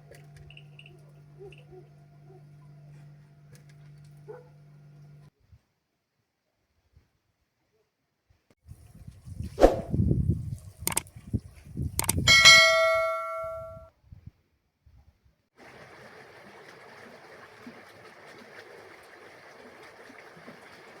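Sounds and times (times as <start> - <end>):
metal object ringing like a bell: 12.3 - 13.9.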